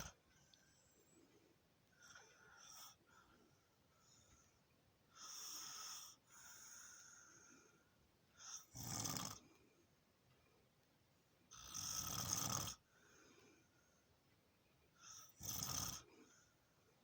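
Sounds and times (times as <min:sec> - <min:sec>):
person snoring: 0:08.5 - 0:09.4, 0:11.5 - 0:12.8, 0:15.2 - 0:16.1.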